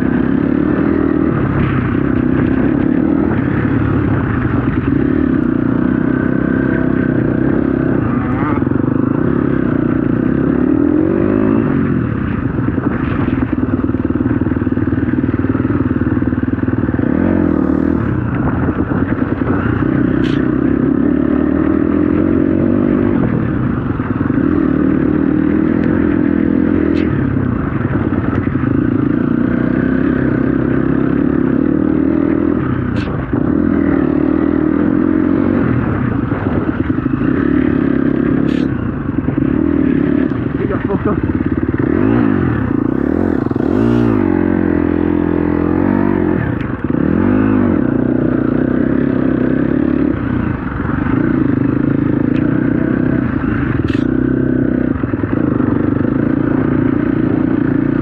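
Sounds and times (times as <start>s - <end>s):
dirt bike engine revving: 0.0s - 13.9s, 14.8s - 23.2s, 29.0s - 50.4s.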